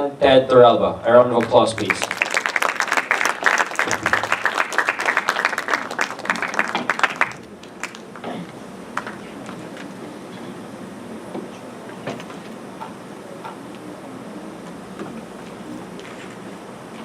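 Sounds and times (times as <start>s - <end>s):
audience applauding: 1.4s - 9.8s.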